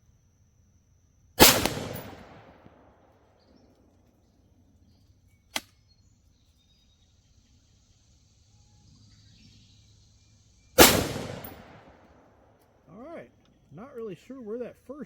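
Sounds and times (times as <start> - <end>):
rifle shot echoing: 1.4 - 3.0, 10.8 - 12.2.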